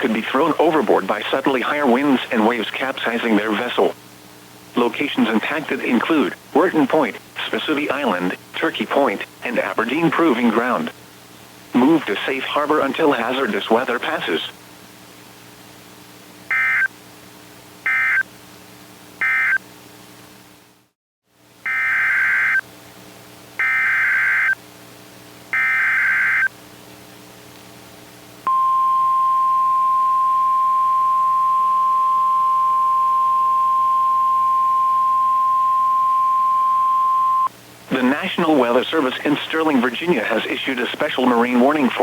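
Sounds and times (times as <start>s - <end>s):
faint hum: 0.0s - 42.0s
steady single-pitch alert tone: 25.6s - 26.5s, 28.5s - 37.5s.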